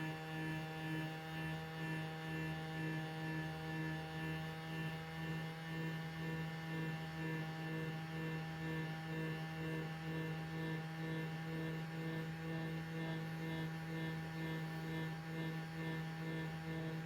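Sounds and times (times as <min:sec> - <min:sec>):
low electric hum: 0:05.2 - 0:17.0.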